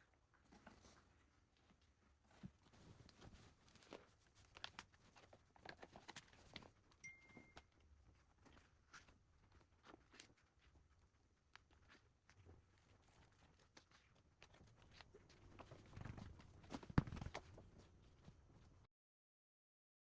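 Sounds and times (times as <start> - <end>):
faint beep: 7.0 - 7.6.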